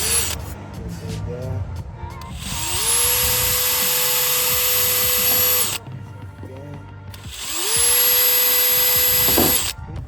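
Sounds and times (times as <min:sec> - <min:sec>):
cordless drill whining: 0:00.0 - 0:00.5, 0:02.2 - 0:05.8, 0:07.1 - 0:09.8.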